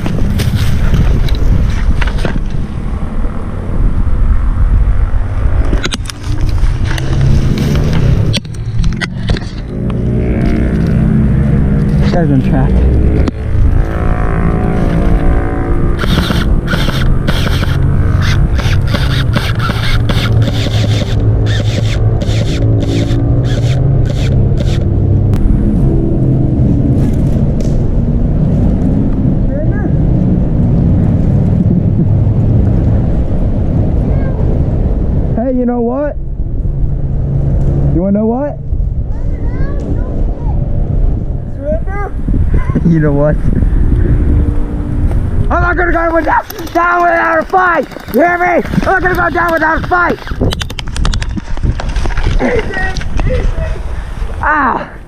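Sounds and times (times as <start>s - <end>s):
wind buffeting microphone: 0.0s - 55.0s
sharp clicks: 16.0s - 24.9s
footsteps crunching on dry ground: 46.0s - 54.4s.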